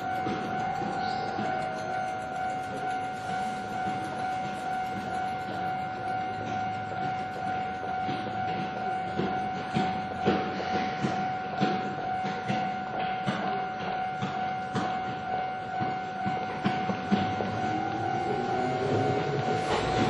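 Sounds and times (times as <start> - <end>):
level crossing warning tone: 0.0 - 20.0.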